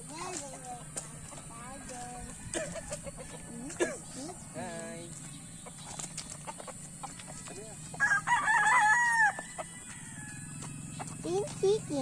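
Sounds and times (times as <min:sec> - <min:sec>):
rooster crowing: 0:07.1 - 0:10.8.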